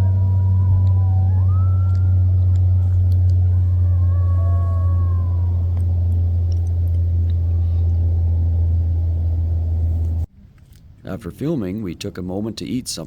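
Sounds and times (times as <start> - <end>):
faint falling high tone: 0.0 - 6.1
wind buffeting microphone: 0.0 - 8.9.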